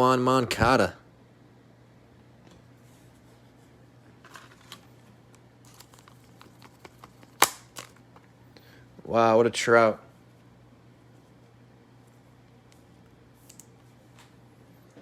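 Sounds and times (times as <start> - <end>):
trading cards rustling: 5.6 - 8.3
card snapping: 6.5 - 8.0.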